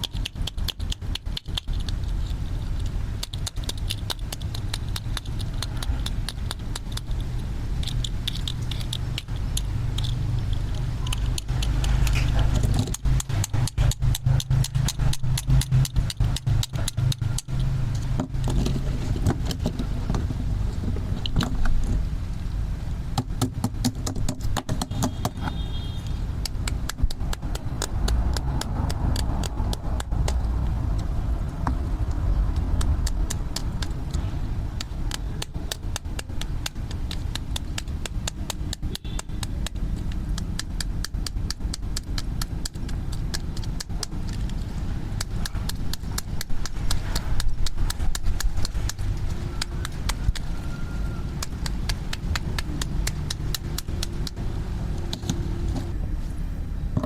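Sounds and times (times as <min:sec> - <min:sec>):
plastic toy tools clicking: 0:00.0 - 0:17.7
low steady hum: 0:00.0 - 0:57.0.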